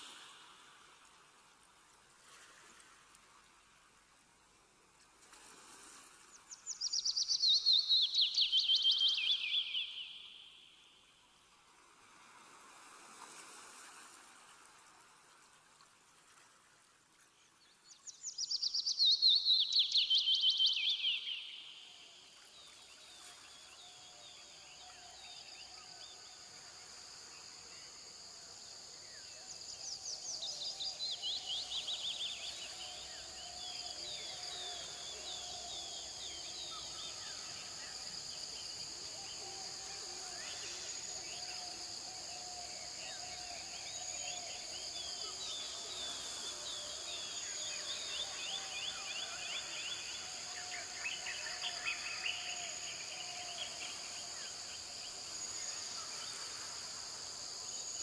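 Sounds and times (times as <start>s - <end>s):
insects droning: 5.5s - 11.4s, 18.3s - 58.0s.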